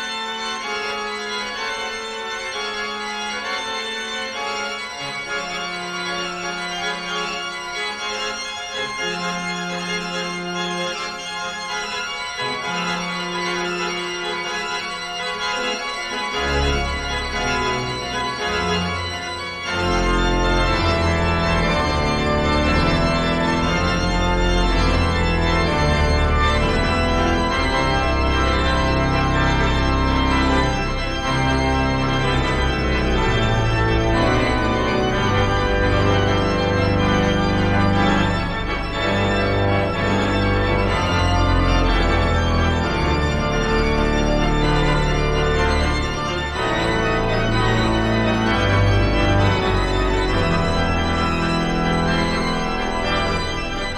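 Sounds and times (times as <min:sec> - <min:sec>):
keyboard chords: 0:00.0 - 0:53.9.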